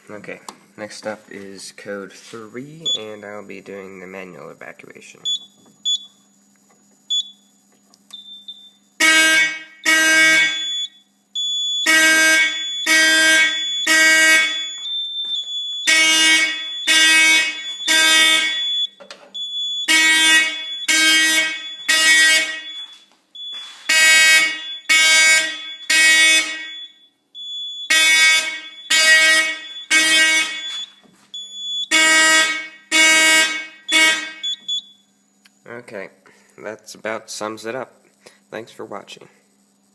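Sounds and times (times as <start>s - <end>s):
fire alarm horn buzzing blasts: 8.1s - 35.4s.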